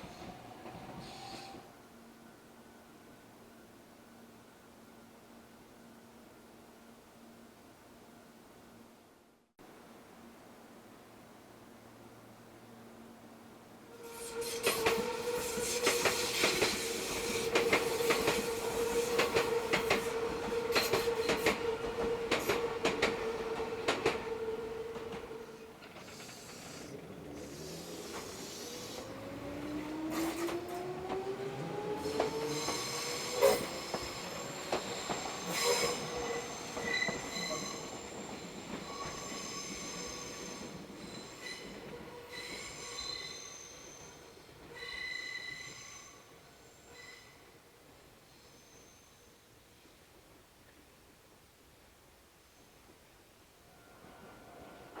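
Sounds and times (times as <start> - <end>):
train wheels squealing: 0.0 - 1.7, 14.0 - 23.1, 25.4 - 49.5.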